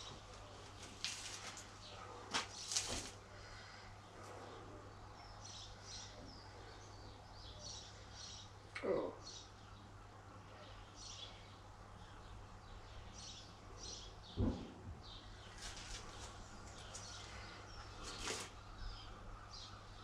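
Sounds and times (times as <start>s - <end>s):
dull thump: 14.4s - 14.8s.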